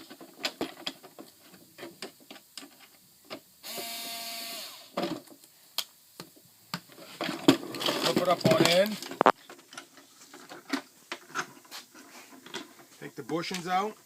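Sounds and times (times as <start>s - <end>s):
plastic parts clicking and knocking: 0.0s - 3.4s, 5.0s - 11.6s
power screwdriver whirring: 3.7s - 4.9s.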